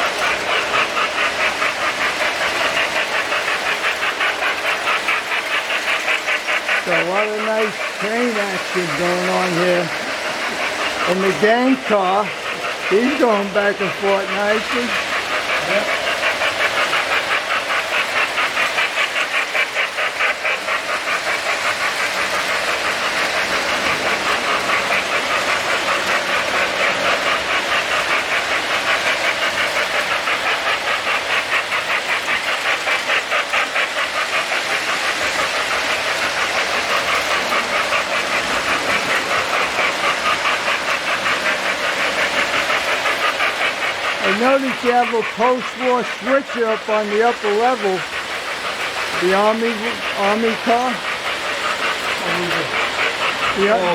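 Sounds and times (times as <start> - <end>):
model trains clattering on track: 0.0 - 53.9.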